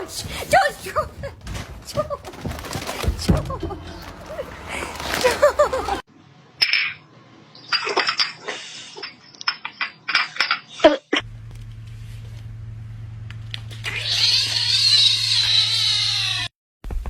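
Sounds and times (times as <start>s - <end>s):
steady low hum: 11.2s - 13.9s
cat meowing: 13.9s - 16.5s.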